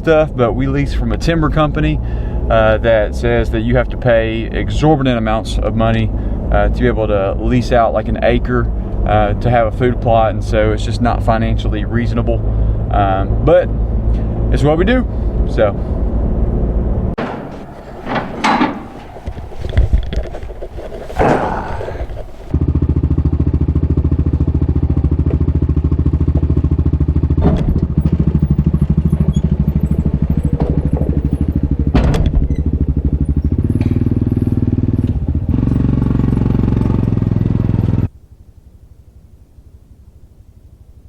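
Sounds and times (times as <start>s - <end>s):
sharp knocks and thumps: 17.2s - 22.6s.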